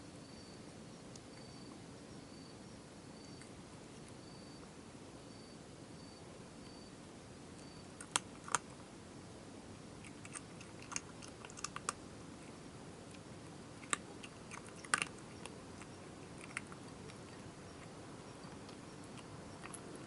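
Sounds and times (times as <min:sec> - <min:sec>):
cat crunching dry food: 0:07.8 - 0:08.8, 0:10.0 - 0:20.0.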